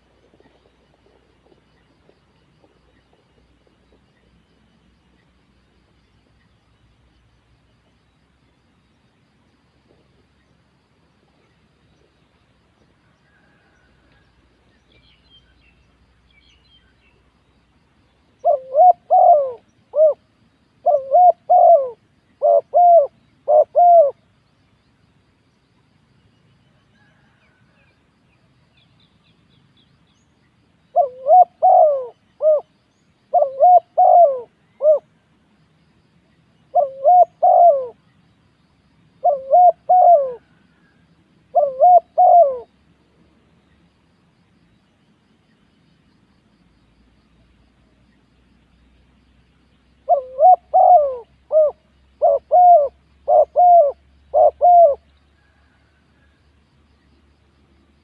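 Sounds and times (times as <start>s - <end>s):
dove cooing: 18.4s - 24.2s, 30.9s - 32.7s, 33.3s - 35.1s, 36.7s - 38.0s, 39.2s - 42.7s, 50.0s - 56.3s.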